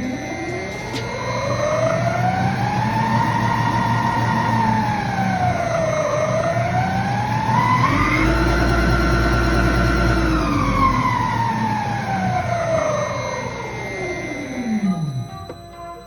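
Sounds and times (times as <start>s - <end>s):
siren wailing: 0.0s - 16.0s.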